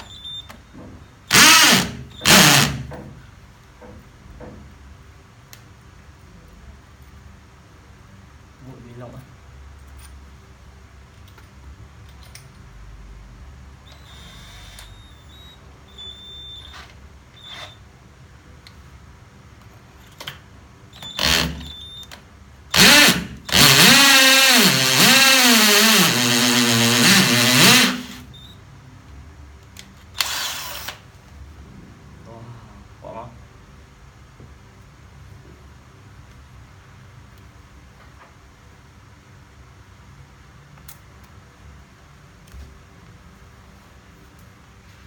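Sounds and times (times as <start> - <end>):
power drill drilling into concrete: 1.3 - 2.9, 21.0 - 21.8, 22.7 - 28.3, 30.2 - 31.0.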